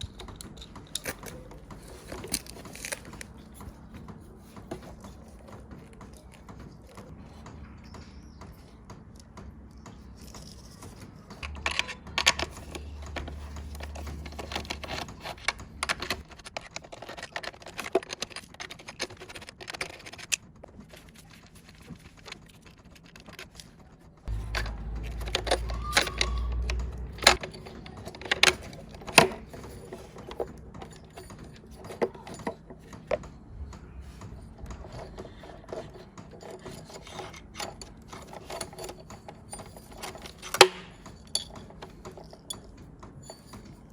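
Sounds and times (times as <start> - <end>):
metal tools clinking and scraping: 0.0 - 7.5, 9.9 - 43.9
low steady hum: 11.2 - 16.2, 24.3 - 43.9.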